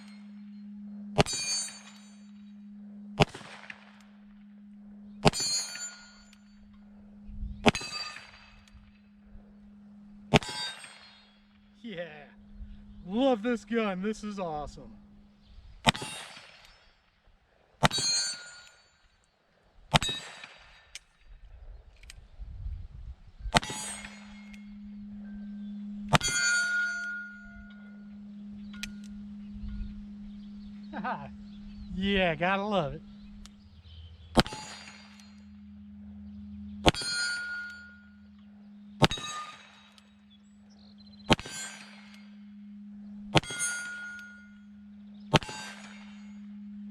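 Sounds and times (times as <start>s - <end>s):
ringing metallic clang: 0.0s - 2.6s, 3.2s - 9.3s, 17.8s - 19.1s, 23.5s - 30.8s, 34.1s - 46.9s
revolver gunshots: 3.2s - 4.0s, 7.6s - 8.7s, 10.3s - 11.2s, 15.8s - 16.8s, 23.5s - 24.6s, 34.3s - 35.3s, 39.0s - 39.8s, 41.3s - 42.2s, 43.3s - 44.4s, 45.3s - 46.2s
revolver shots: 41.3s - 42.2s.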